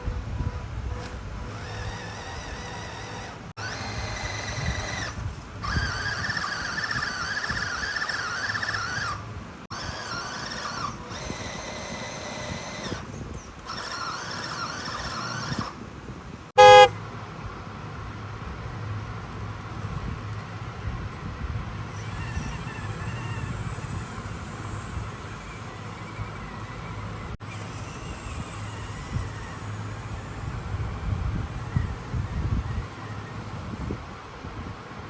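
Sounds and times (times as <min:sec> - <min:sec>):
electric motor whining: 0:00.0 - 0:15.8, 0:16.6 - 0:16.9, 0:21.8 - 0:34.0
horn toot: 0:16.6 - 0:16.9.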